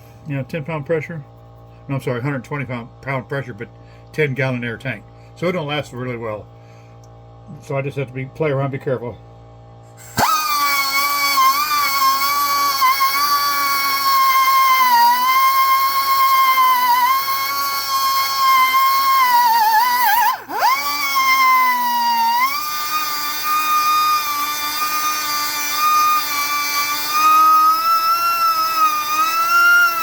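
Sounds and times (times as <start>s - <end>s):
air polishing tool whining: 9.9s - 30.0s.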